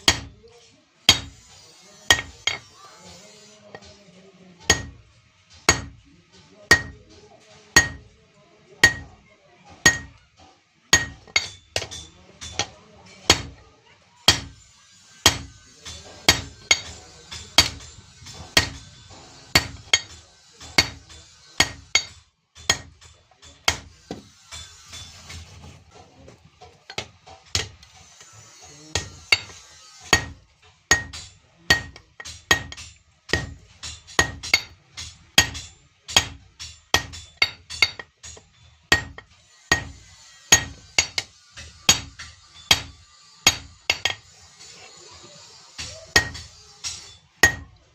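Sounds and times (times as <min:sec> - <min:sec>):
hammer striking iron on anvil: 0:00.0 - 0:00.4, 0:01.1 - 0:02.8, 0:04.7 - 0:05.0, 0:05.6 - 0:06.0, 0:06.7 - 0:07.1, 0:07.8 - 0:08.1, 0:08.8 - 0:09.2, 0:09.8 - 0:10.2, 0:10.9 - 0:13.6, 0:14.3 - 0:14.6, 0:15.2 - 0:25.4, 0:26.9 - 0:44.8, 0:45.8 - 0:47.8.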